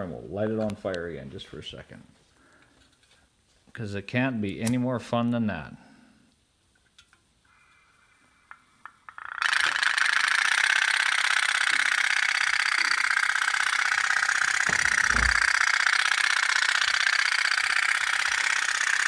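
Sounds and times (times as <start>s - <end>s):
toy steamboat putt-putt: 8.5s - 19.0s
dull bump: 14.7s - 15.5s.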